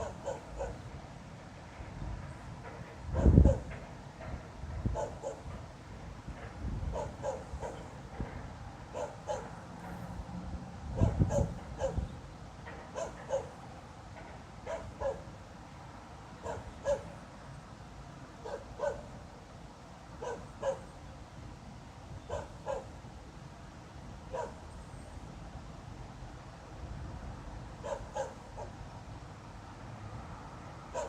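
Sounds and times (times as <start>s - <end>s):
dog barking: 0.0s - 0.8s, 3.2s - 3.7s, 4.9s - 5.5s, 6.9s - 7.9s, 8.9s - 9.6s, 11.0s - 12.0s, 12.9s - 13.6s, 14.6s - 15.3s, 16.4s - 17.1s, 18.4s - 19.1s, 20.2s - 20.9s, 22.3s - 22.9s, 24.3s - 24.6s, 27.8s - 28.8s.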